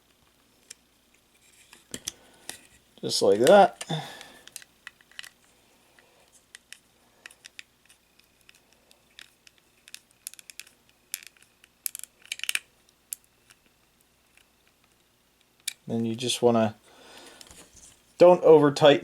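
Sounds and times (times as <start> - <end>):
plastic toy parts clicking: 3.4 - 5.4, 6.5 - 13.7, 15.6 - 15.8.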